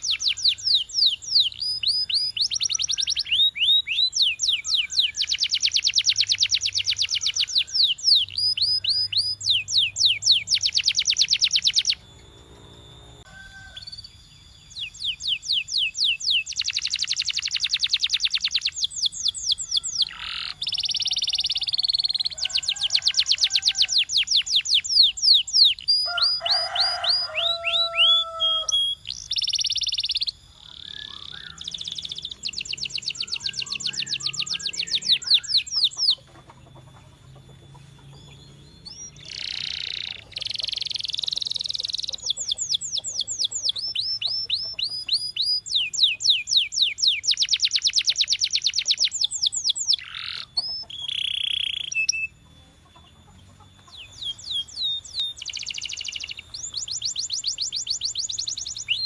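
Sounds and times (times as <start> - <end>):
canary singing: 0.0 - 59.0.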